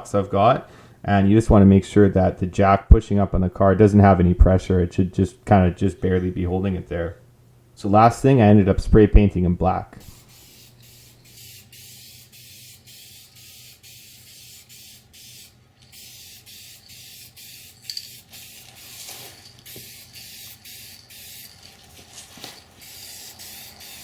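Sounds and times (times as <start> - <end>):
spray paint can hissing: 10.0 - 21.7, 22.8 - 24.0.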